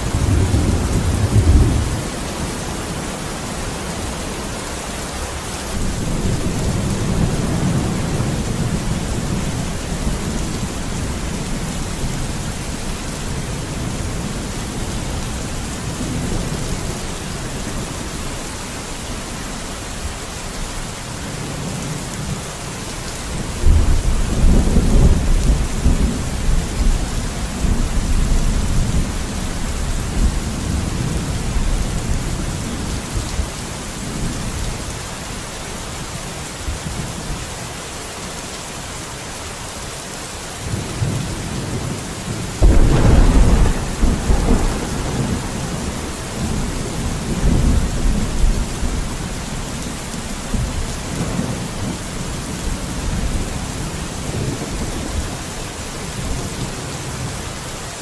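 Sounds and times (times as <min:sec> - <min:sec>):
rolling thunder: 0:00.0 - 0:02.6, 0:42.6 - 0:54.9
steady rain: 0:00.0 - 0:58.0
loud thunder clap: 0:42.6 - 0:46.6.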